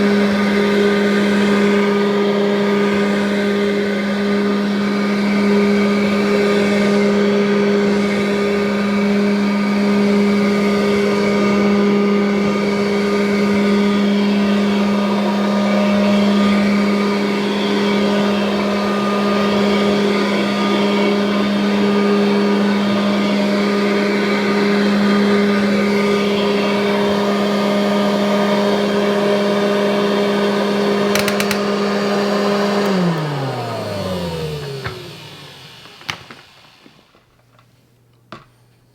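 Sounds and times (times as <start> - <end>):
vacuum cleaner running: 0.0 - 38.9
motor spinning down: 0.1 - 37.3
sharp clicks: 31.2 - 31.6.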